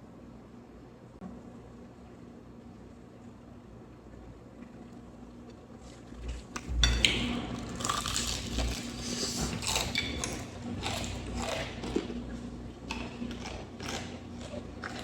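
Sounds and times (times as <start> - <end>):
crunchy chewing: 7.6 - 15.0.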